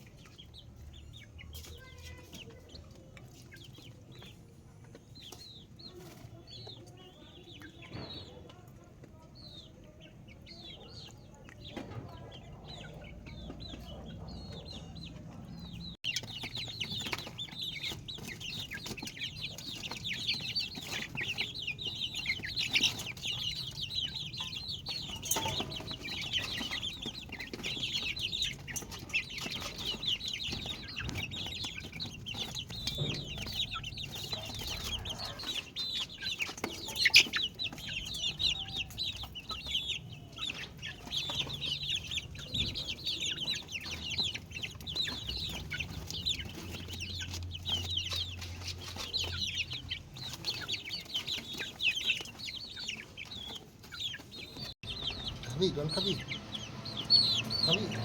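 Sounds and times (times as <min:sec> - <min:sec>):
chicks peeping: 0:00.0 - 0:58.0.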